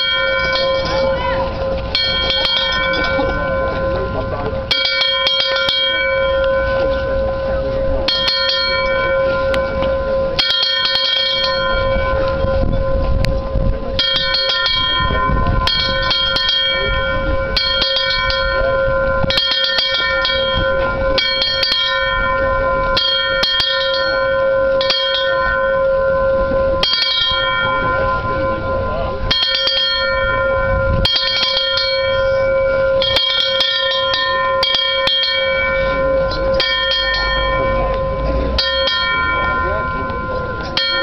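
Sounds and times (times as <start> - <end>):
large bell ringing: 0.0 - 41.0.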